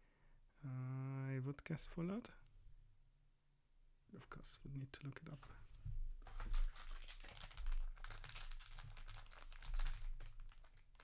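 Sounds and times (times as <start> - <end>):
foil wrapper crinkling: 6.2 - 11.0.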